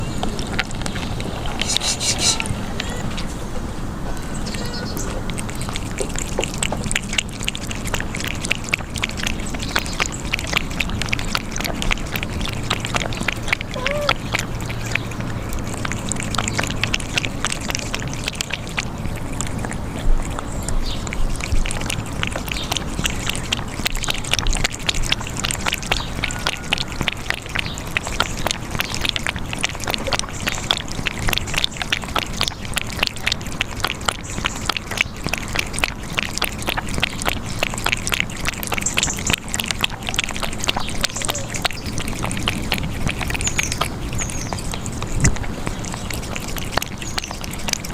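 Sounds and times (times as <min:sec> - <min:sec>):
kittens lapping and chewing: 0:00.0 - 0:47.9
kitten squeaks: 0:13.7 - 0:14.2.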